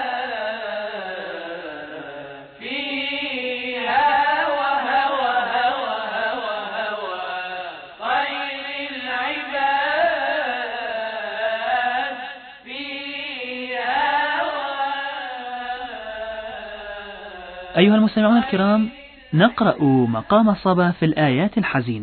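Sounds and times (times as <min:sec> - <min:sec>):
person chanting melismatic notes: 0:19.4 - 0:20.5.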